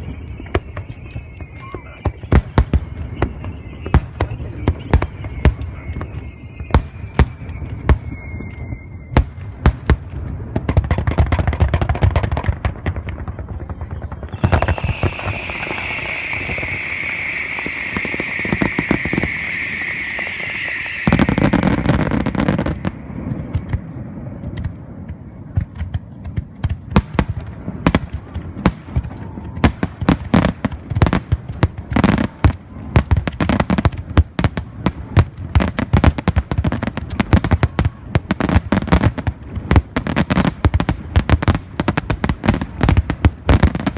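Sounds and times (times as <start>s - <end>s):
falling firework whistle: 0.0s - 10.8s, 13.5s - 24.4s, 27.9s - 43.9s
fireworks bursting with sharp bangs: 0.0s - 43.9s
heavy low rumble: 13.0s - 26.4s
steady hiss: 14.4s - 24.2s.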